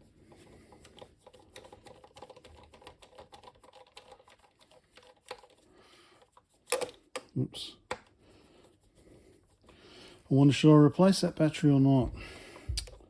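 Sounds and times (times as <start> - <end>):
small computer parts clicking: 0.7 - 5.6, 6.2 - 7.3.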